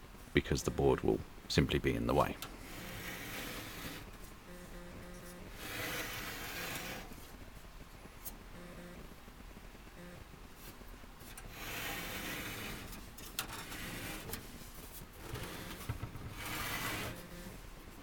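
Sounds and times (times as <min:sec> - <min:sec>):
rubbing and scraping on steel case: 0:02.5 - 0:04.3, 0:05.2 - 0:07.3, 0:10.6 - 0:17.6.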